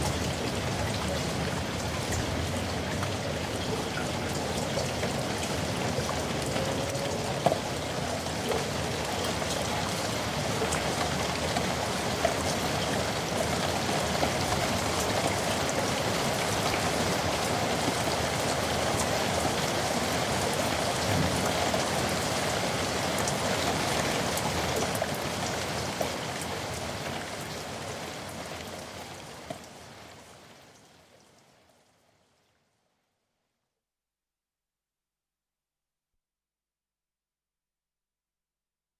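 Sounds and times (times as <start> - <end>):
heavy rain falling: 0.0 - 30.2
water drips and splashes: 0.0 - 31.5.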